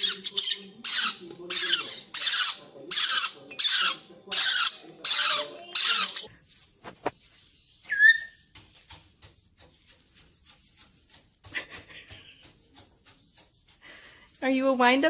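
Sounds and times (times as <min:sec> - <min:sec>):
bird squawking: 0:00.0 - 0:06.3, 0:07.9 - 0:08.4.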